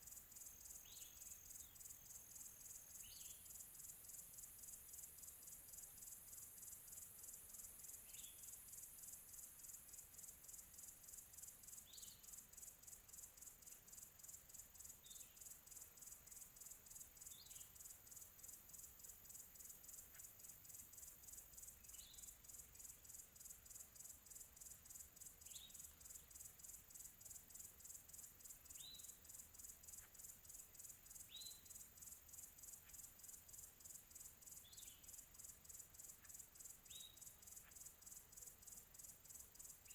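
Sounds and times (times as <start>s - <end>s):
crickets trilling: 0.1s - 39.9s
bird chirping: 28.6s - 29.2s, 31.2s - 31.8s, 34.6s - 35.2s, 36.2s - 37.9s.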